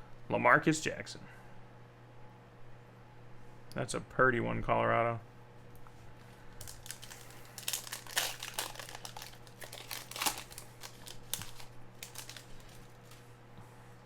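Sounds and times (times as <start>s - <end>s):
foil wrapper crinkling: 6.6s - 13.3s.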